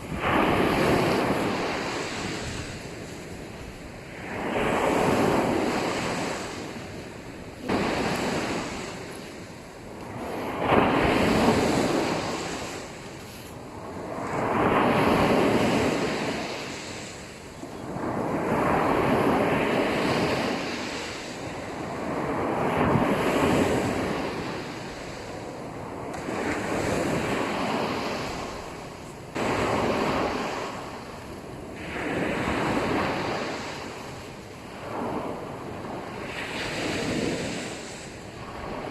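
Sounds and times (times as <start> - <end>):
sea waves breaking on beach: 0.0 - 38.9.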